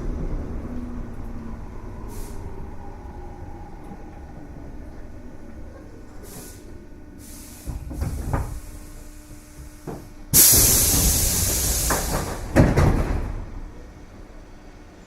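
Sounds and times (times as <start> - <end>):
loud compressed air hiss: 6.2 - 9.2, 10.3 - 12.6
knocks: 11.9 - 13.4.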